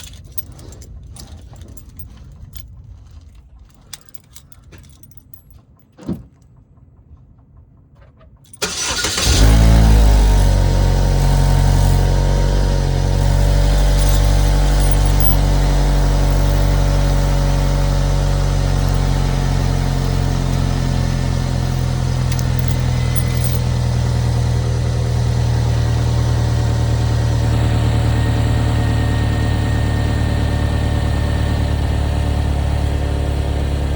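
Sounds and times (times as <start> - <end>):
car engine starting and idling: 8.5 - 33.9.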